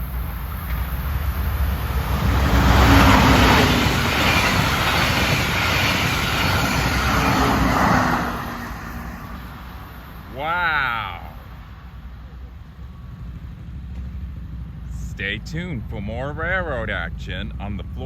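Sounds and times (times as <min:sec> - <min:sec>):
train passing at high speed: 0:00.0 - 0:18.0.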